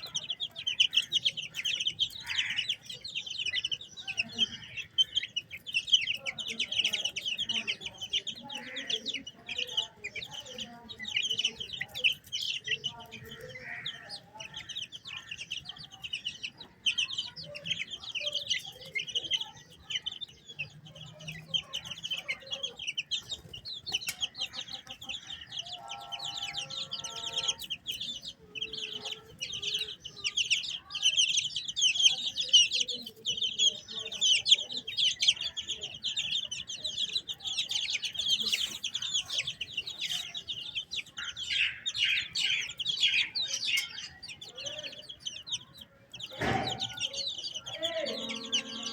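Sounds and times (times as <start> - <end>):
chicks peeping: 0.0 - 48.9
hen clucking: 20.6 - 48.9.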